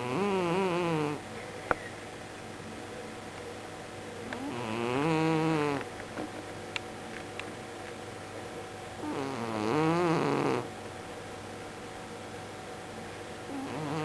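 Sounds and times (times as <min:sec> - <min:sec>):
cat snoring: 0:00.0 - 0:01.2, 0:04.3 - 0:05.8, 0:09.0 - 0:10.7, 0:13.5 - 0:14.0.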